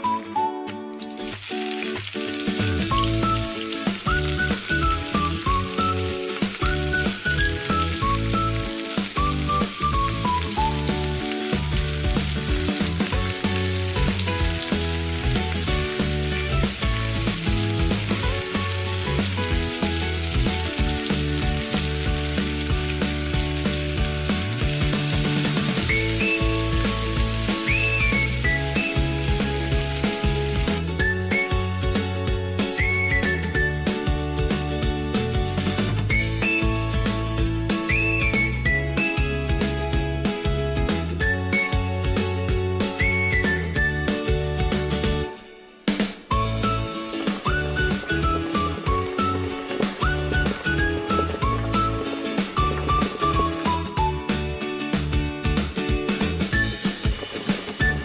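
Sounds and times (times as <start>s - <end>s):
food sizzling in a hot pan: 0.9s - 30.8s, 46.8s - 53.4s, 56.7s - 58.0s
background music with steady beat: 1.6s - 58.0s.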